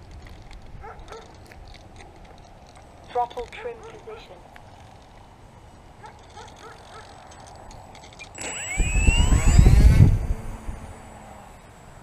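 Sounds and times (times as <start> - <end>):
electric motor and propeller whine: 6.9 - 12.0.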